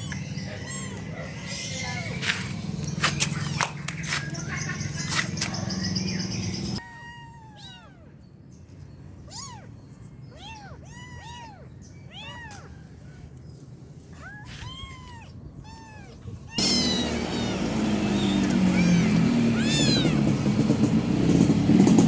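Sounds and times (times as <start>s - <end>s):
kitten mewing: 0.0s - 1.2s, 14.2s - 20.3s.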